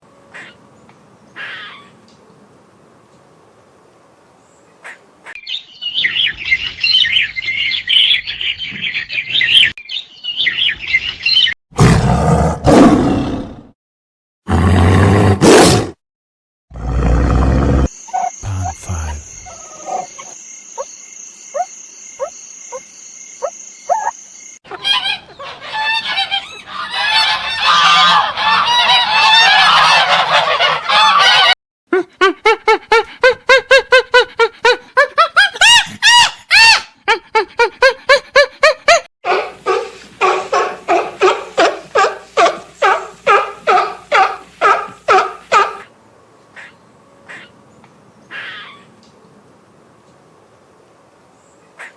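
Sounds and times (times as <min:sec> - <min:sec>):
animal calls: 0:17.3 - 0:45.8.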